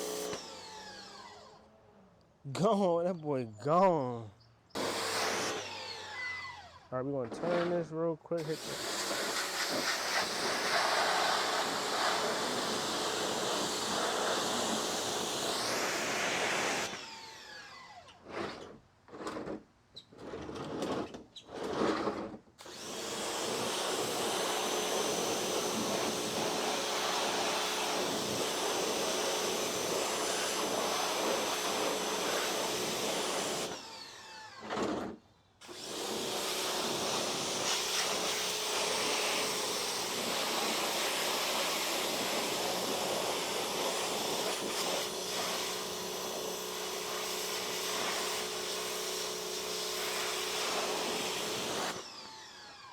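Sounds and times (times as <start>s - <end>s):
pressure washer spraying: 4.8s - 5.6s, 8.4s - 14.7s, 35.8s - 46.4s.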